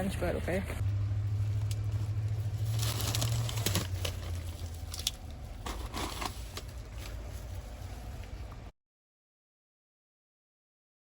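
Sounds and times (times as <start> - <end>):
low steady hum: 0.0 - 8.7
takeout bag rustling: 1.3 - 8.5.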